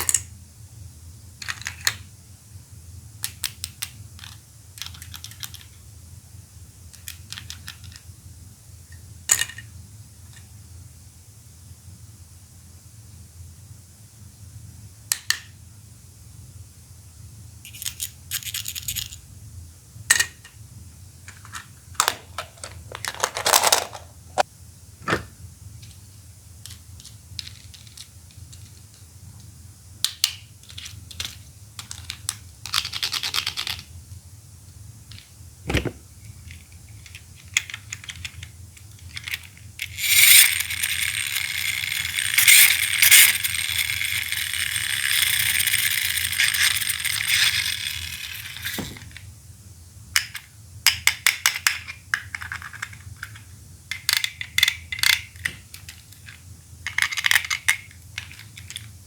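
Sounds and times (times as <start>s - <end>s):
plastic toys clicking and rattling: 3.2s - 5.7s, 7.0s - 8.0s, 17.7s - 19.2s, 21.3s - 24.4s, 26.6s - 29.0s, 30.0s - 33.9s, 35.1s - 49.3s, 50.2s - 59.0s.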